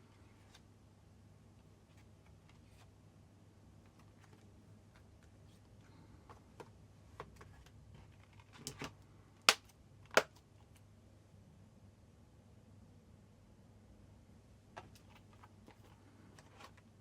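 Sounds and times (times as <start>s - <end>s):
sharp plastic snaps: 8.6s - 10.4s.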